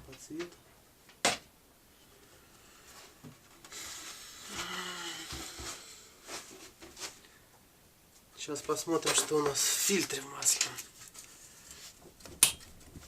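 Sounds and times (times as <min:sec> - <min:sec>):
rustling hissing noise: 0:01.9 - 0:07.4, 0:08.2 - 0:12.2.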